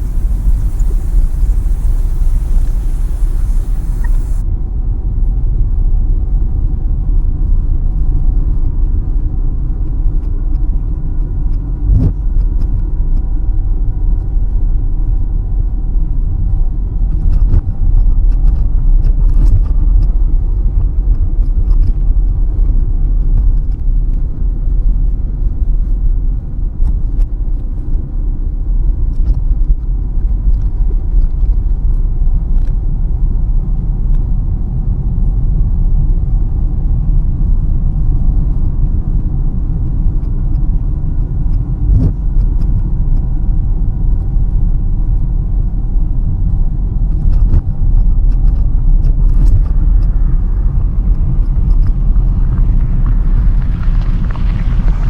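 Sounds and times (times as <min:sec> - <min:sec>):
car cabin road rumble: 0:00.0 - 0:04.4, 0:48.1 - 0:55.0
faint light ticks: 0:00.0 - 0:04.4.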